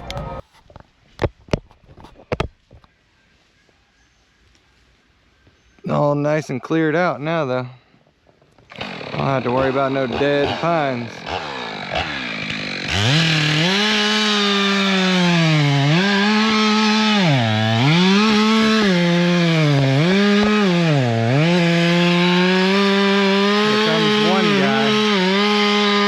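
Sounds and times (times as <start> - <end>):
chainsaw running under load: 8.7 - 26.0.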